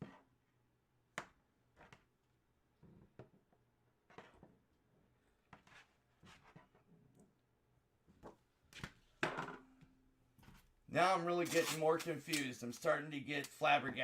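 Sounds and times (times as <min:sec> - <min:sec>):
cards and packaging rustling: 0:11.3 - 0:13.7.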